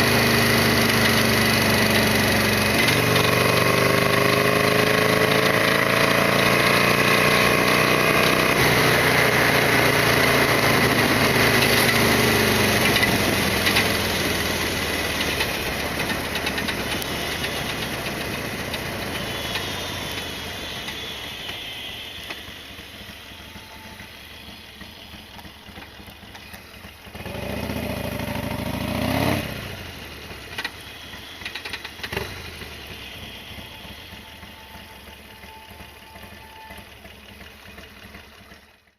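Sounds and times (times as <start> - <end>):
motorcycle engine running: 0.0 - 38.9
engine revving burst: 27.1 - 34.0.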